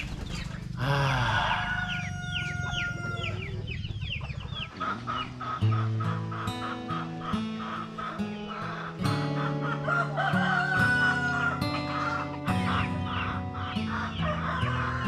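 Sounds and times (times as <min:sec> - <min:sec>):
small birds chirping: 0:00.0 - 0:15.0
rooster crowing: 0:00.8 - 0:03.7, 0:08.6 - 0:15.0.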